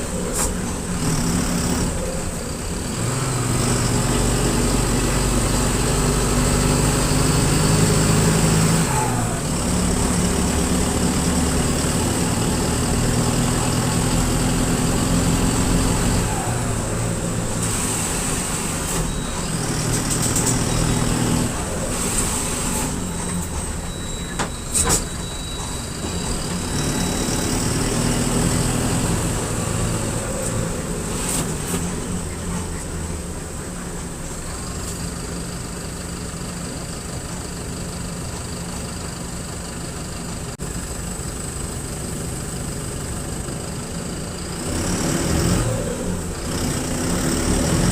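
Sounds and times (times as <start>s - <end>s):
bus diesel engine: 0.0s - 47.9s
air brake hisses and clicks: 0.3s - 0.7s, 21.9s - 23.0s, 24.4s - 25.2s.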